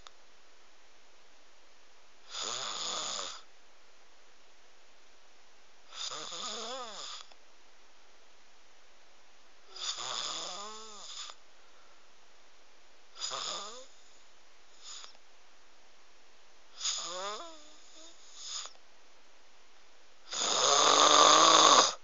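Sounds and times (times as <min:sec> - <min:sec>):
person snoring: 0:02.3 - 0:03.5, 0:05.9 - 0:07.3, 0:09.7 - 0:11.4, 0:13.2 - 0:14.0, 0:16.8 - 0:18.8, 0:20.3 - 0:22.0.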